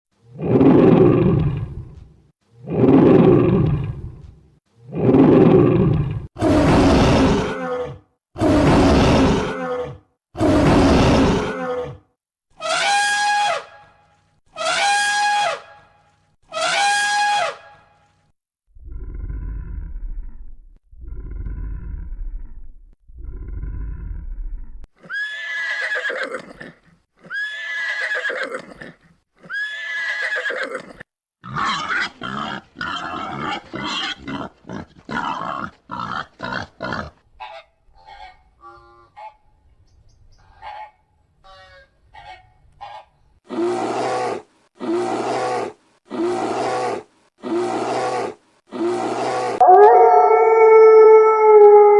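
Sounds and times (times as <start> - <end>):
horse whinnying: 25.0 - 32.2
farm animal calls: 31.5 - 39.5, 40.4 - 43.2.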